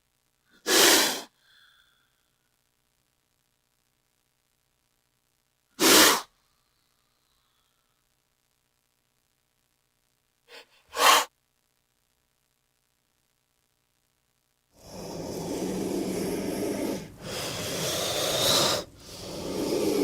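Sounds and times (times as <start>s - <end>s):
snake hissing: 0.6s - 1.4s, 5.8s - 6.3s, 10.5s - 11.3s, 14.8s - 20.0s.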